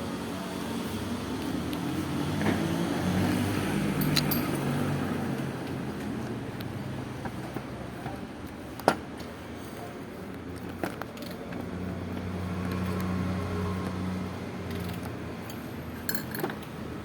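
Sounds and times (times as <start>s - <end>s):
sharp metallic clicks: 4.0s - 4.6s.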